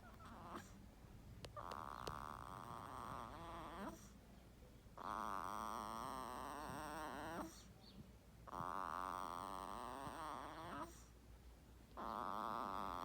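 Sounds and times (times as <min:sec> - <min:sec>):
baby snoring: 0:01.6 - 0:04.1, 0:08.5 - 0:11.1, 0:12.0 - 0:13.0.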